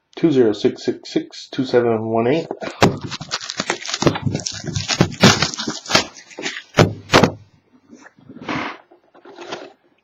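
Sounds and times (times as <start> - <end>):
plastic shrink wrap crinkling: 2.6 - 6.9.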